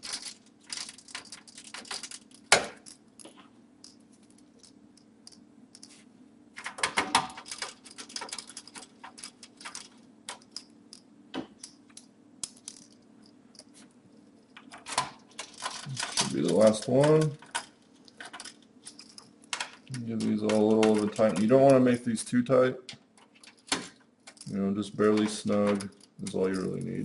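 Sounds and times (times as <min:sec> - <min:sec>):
metal screw clicks and rattles: 0:00.0 - 0:06.0, 0:06.6 - 0:13.0, 0:14.5 - 0:21.8
faint steady hum: 0:00.0 - 0:27.0.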